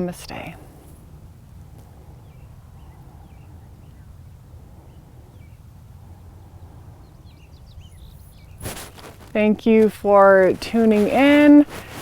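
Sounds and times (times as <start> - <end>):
small birds chirping faintly: 0.0 - 12.0
steady low rumble: 0.0 - 12.0.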